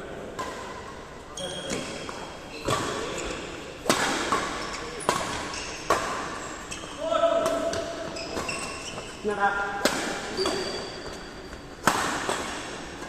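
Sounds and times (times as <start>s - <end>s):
rackets hitting shuttlecock: 0.3s - 6.8s, 9.8s - 13.0s.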